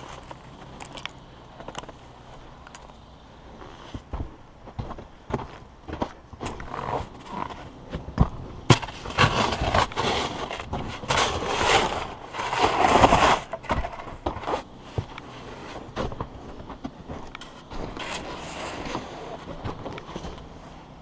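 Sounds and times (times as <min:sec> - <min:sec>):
shovel scraping snow: 0:08.7 - 0:16.6, 0:17.4 - 0:20.8.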